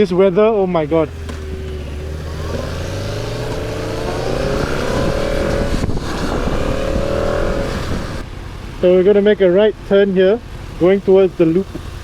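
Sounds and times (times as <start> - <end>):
motorcycle engine accelerating: 0.6 - 8.6
wind noise on microphone: 1.5 - 8.3.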